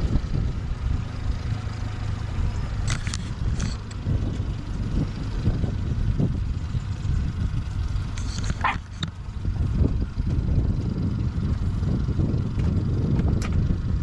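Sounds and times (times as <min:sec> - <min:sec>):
boat motor rumbling: 0:00.0 - 0:14.0
dog yelping: 0:08.5 - 0:09.0.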